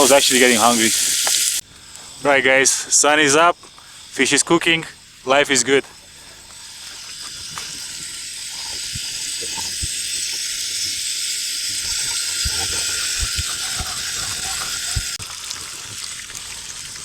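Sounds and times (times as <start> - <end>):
fish sizzling in a pan: 0.0 - 2.0, 6.0 - 17.0
small pops and crackles: 1.0 - 1.6, 7.1 - 16.6.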